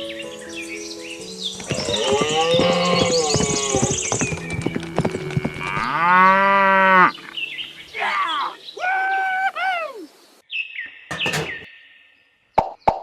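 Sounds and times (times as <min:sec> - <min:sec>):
cow mooing: 0:05.6 - 0:07.1
clicks and knocks: 0:11.1 - 0:11.7.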